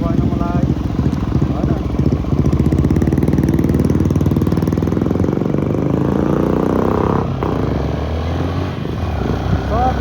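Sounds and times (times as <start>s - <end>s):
motorcycle engine revving: 0.0s - 10.0s.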